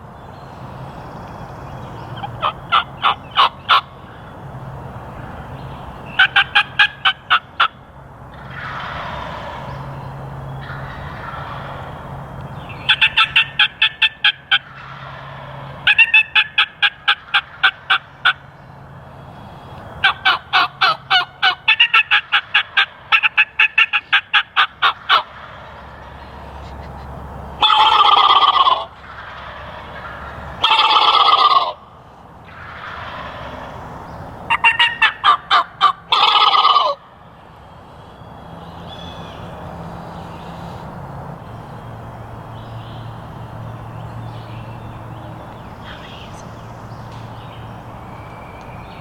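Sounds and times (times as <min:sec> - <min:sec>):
turkey gobbles: 0:02.2 - 0:03.9, 0:06.1 - 0:09.6, 0:12.8 - 0:15.2, 0:20.0 - 0:31.8, 0:34.5 - 0:37.0
turkey yelping: 0:02.2 - 0:04.0, 0:06.1 - 0:07.8, 0:08.4 - 0:09.6, 0:10.6 - 0:12.0, 0:12.8 - 0:18.4, 0:20.0 - 0:31.9, 0:34.5 - 0:37.1.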